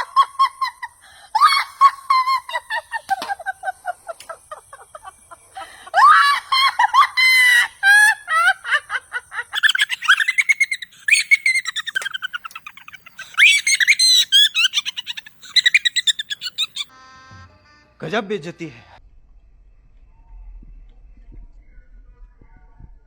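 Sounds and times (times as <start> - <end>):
birds chirping and whistling: 9.6 - 16.9.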